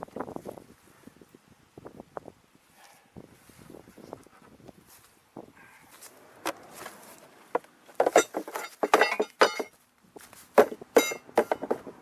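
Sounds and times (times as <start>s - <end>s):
metal objects clanking: 7.9s - 9.7s, 10.6s - 11.9s.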